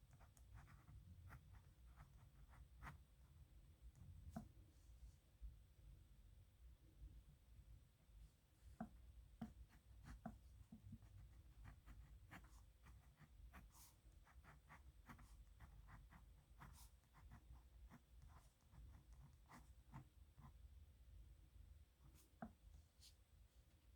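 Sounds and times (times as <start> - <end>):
pen scratching on paper: 9.4 - 20.5.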